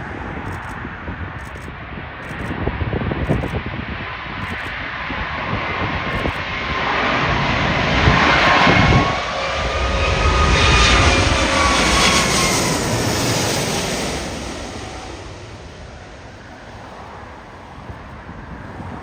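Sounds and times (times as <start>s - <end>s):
jet airliner flying past: 0.0s - 19.0s
wind buffeting microphone: 0.0s - 19.0s.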